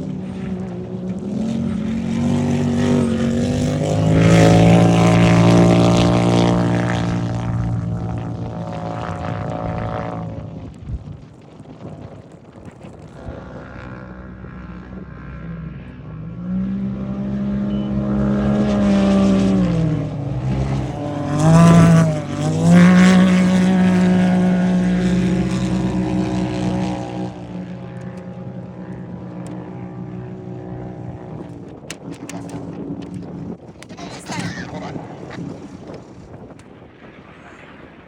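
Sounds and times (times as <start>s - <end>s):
engine revving past: 0.1s - 10.5s, 14.7s - 27.7s.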